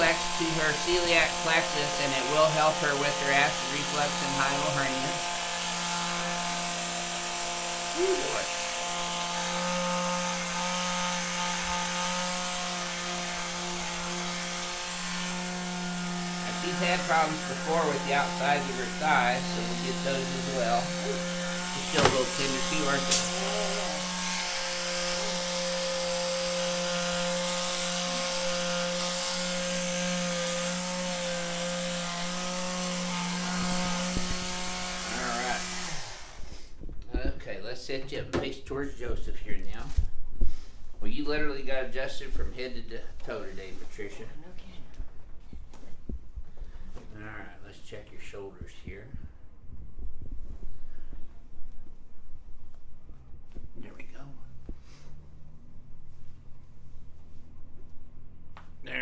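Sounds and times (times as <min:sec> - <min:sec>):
massage tool motor hum: 0:00.0 - 0:36.9.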